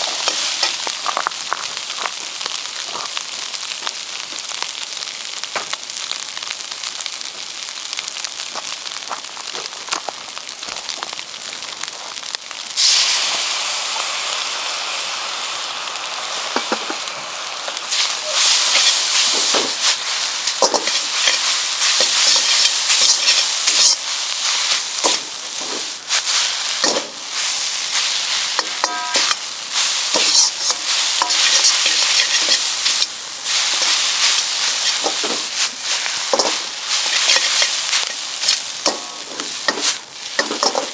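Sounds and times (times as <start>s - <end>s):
utensil scraping pan: 0.0s - 0.8s, 17.9s - 27.1s, 28.0s - 40.9s
food sizzling in a wok: 0.0s - 40.9s
metallic ring: 28.8s - 29.4s.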